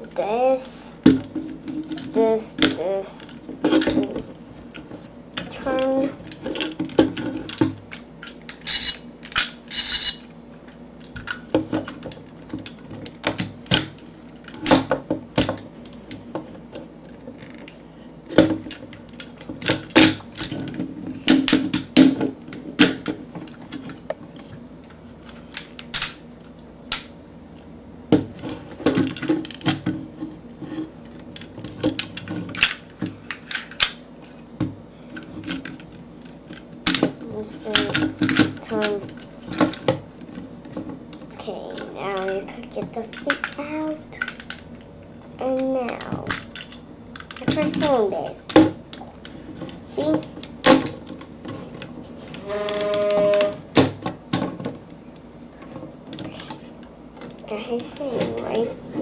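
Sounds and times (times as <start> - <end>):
plastic toy parts clicking: 7.5 - 10.2, 25.3 - 26.2, 31.4 - 34.0, 41.7 - 42.4, 43.1 - 43.6, 44.2 - 44.6, 45.5 - 47.9.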